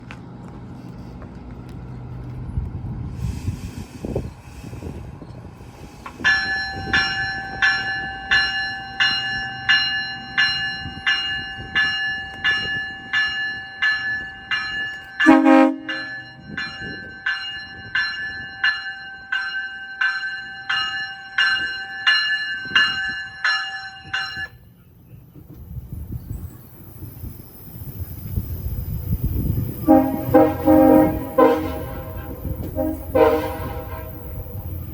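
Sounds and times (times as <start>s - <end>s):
low locomotive rumble: 0.0s - 17.2s, 24.5s - 34.9s
locomotive bell ringing: 6.2s - 24.8s, 29.7s - 34.9s
train horn blast: 15.2s - 16.2s, 29.8s - 34.9s.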